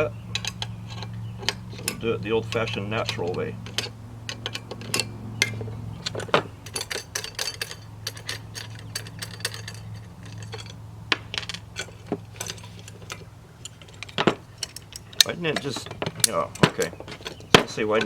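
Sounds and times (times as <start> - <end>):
steady low hum: 0.0 - 18.0
wrench clicking on metal: 0.0 - 18.0.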